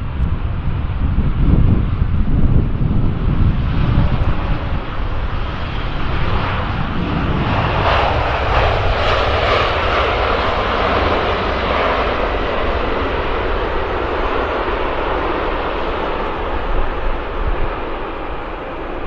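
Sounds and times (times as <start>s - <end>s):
airplane engines roaring: 0.0s - 19.0s
wind on microphone: 0.0s - 19.0s.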